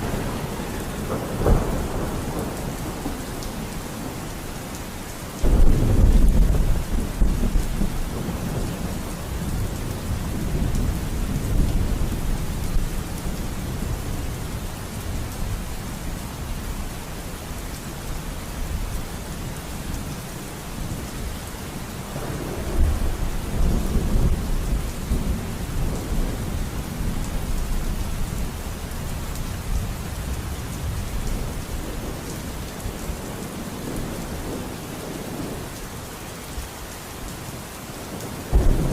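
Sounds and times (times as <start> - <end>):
thunder rumbling: 0.0 - 4.4, 5.4 - 15.8, 22.1 - 28.6, 38.5 - 38.9
steady rain: 0.0 - 38.9.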